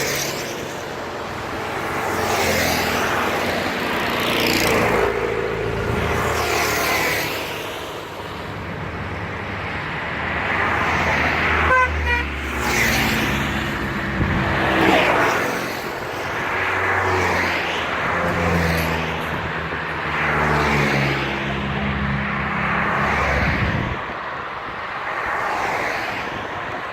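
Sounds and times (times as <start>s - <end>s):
motorcycles riding past: 2.2s - 7.6s.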